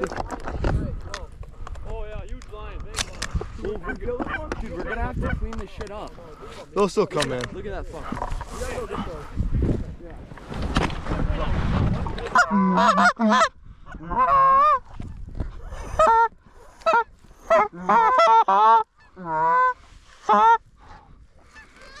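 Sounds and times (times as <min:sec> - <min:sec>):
goose honking: 0:12.2 - 0:14.8, 0:15.8 - 0:20.6.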